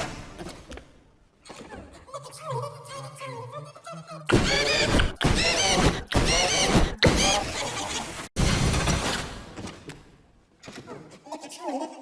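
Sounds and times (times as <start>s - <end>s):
warbling processed cartoon sound: 4.3s - 8.3s.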